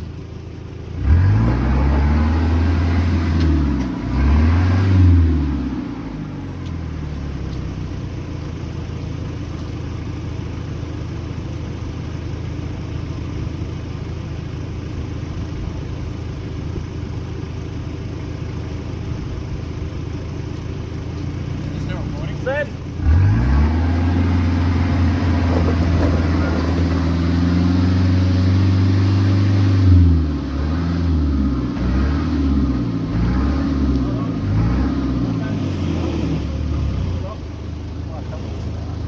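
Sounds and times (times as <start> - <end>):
engine revving: 1.0 - 7.6, 21.6 - 39.0.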